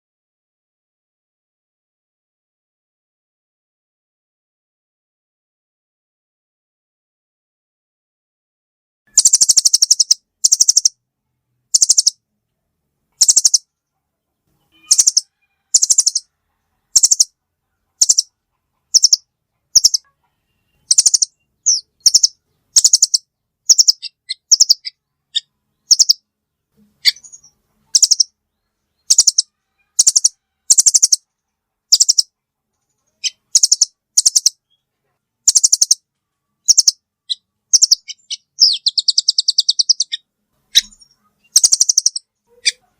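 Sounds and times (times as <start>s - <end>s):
nuthatch high-pitched trills: 9.2s - 10.9s, 11.8s - 12.2s, 13.2s - 13.6s, 14.7s - 16.3s, 16.9s - 17.3s, 18.0s - 18.3s, 18.9s - 19.2s, 19.8s - 20.0s, 20.6s - 26.2s, 27.0s - 28.3s, 29.0s - 31.2s, 31.9s - 32.3s, 33.2s - 34.6s, 35.5s - 36.0s, 36.6s - 40.2s, 40.8s - 42.8s.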